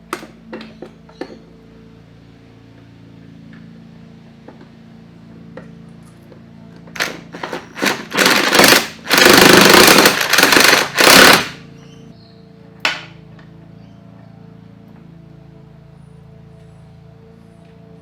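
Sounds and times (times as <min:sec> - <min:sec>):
impact wrench hammering: 0:07.0 - 0:11.6.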